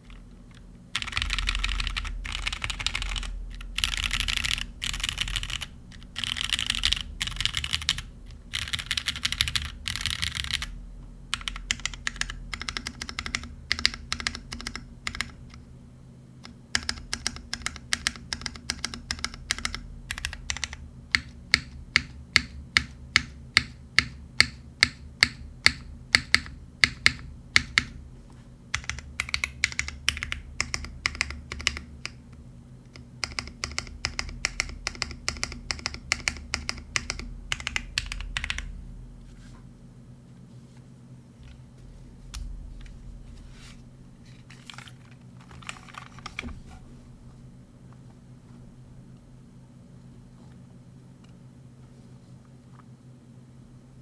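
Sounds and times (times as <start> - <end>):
typing on mechanical keyboard: 1.0 - 10.7, 11.3 - 15.6, 16.4 - 28.0, 28.7 - 32.2, 32.9 - 38.7, 44.6 - 46.5.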